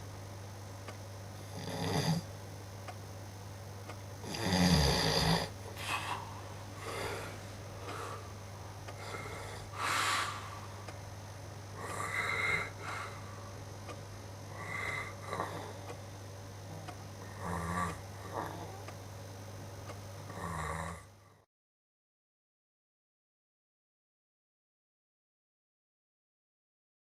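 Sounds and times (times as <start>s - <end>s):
steady low hum: 0.0s - 21.5s
person snoring: 1.4s - 2.3s, 4.2s - 8.4s, 9.0s - 10.8s, 11.8s - 13.5s, 14.5s - 16.0s, 16.6s - 18.9s, 20.3s - 21.4s.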